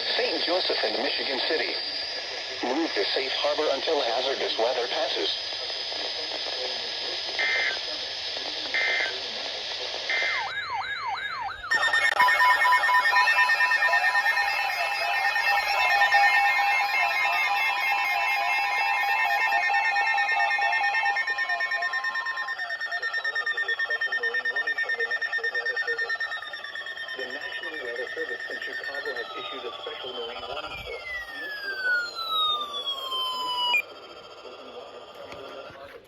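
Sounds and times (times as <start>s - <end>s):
rapid pulsing beeps: 0.0s - 36.0s
wailing siren-like sweep: 10.1s - 35.4s
alert tones and warbles: 10.1s - 35.8s.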